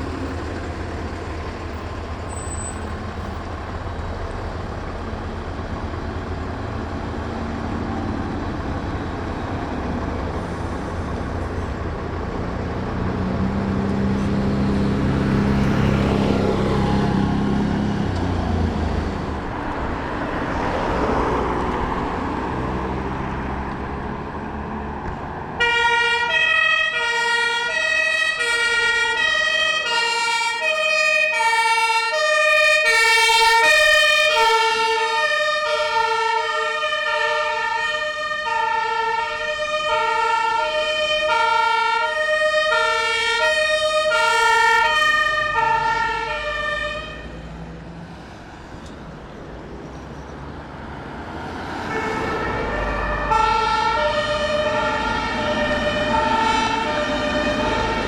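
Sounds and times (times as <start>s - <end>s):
road and engine noise: 0.0s - 58.0s
two-tone emergency siren: 25.6s - 47.4s, 51.5s - 58.0s.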